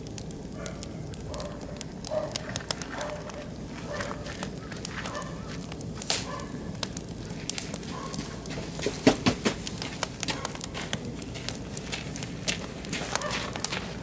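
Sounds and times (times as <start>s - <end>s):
sharp pops of fire: 0.0s - 14.0s
wood fire crackling: 0.0s - 14.0s.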